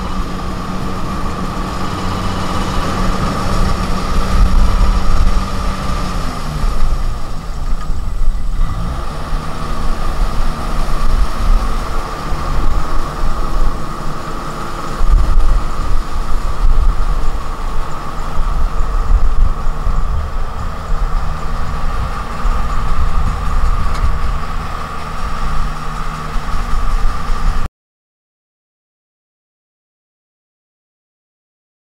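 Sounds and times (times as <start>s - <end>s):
combine harvester engine: 0.0s - 27.7s
high whine: 0.0s - 27.7s.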